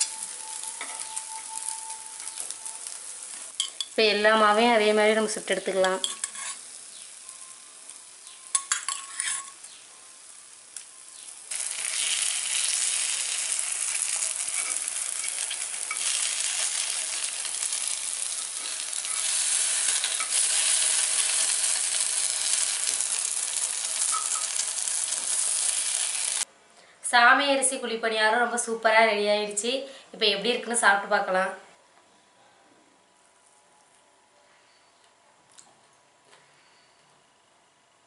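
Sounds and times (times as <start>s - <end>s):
batter sizzling in oil: 0.0s - 4.0s, 5.3s - 26.5s.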